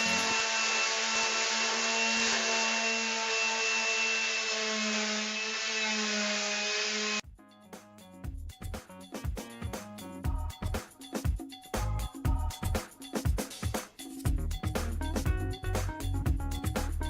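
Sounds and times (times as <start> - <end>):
electric sander grinding metal: 0.0 - 7.2.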